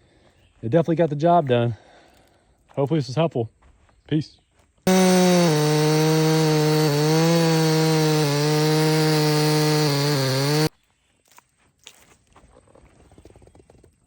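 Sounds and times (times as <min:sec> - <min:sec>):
chainsaw cutting a log: 0:04.9 - 0:10.7.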